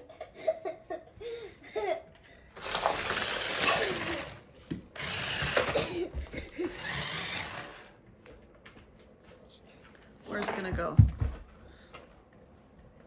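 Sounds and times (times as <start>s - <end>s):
toy truck electric motor whirring: 2.6s - 8.0s.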